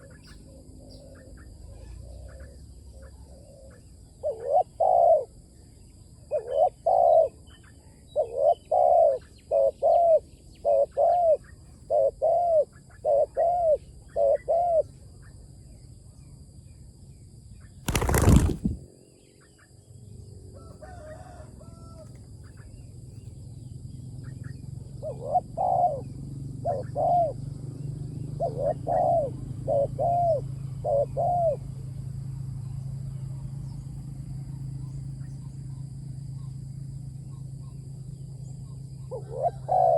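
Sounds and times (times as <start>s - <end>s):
dove cooing: 1.0s - 5.3s, 6.3s - 7.4s, 8.2s - 14.8s, 17.9s - 18.8s, 25.0s - 27.4s, 28.4s - 31.6s, 39.1s - 39.9s.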